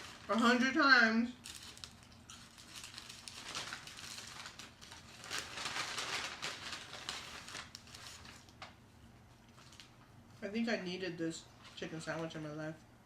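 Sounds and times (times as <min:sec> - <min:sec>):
paper wrapping crinkling: 0:00.0 - 0:10.1.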